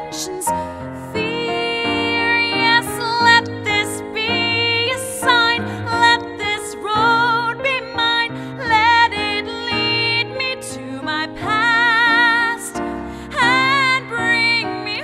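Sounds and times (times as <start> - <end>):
instrumental chord accompaniment: 0.0 - 15.0
woman singing with vibrato: 0.0 - 15.0.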